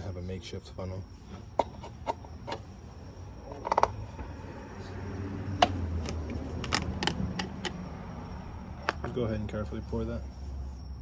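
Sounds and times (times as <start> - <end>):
plastic jug clicking and rattling: 5.5 - 7.8.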